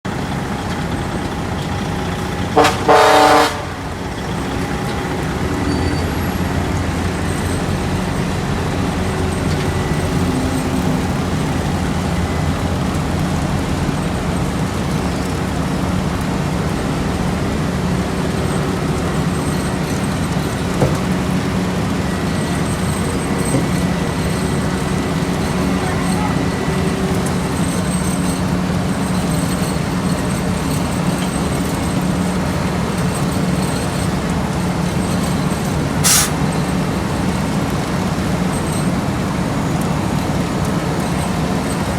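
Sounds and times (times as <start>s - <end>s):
diesel machinery engines running: 0.0s - 41.9s
loud vehicle horn: 2.5s - 4.0s.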